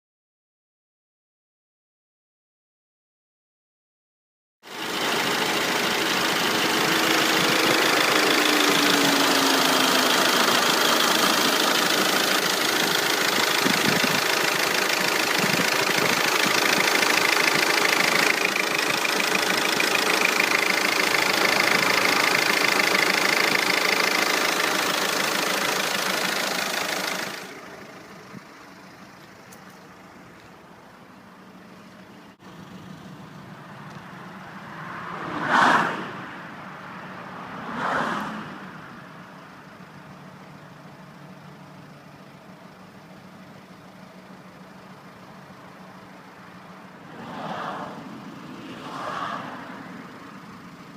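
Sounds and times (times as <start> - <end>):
diesel engine clattering: 4.7 - 34.4, 39.2 - 47.1, 49.9 - 50.9.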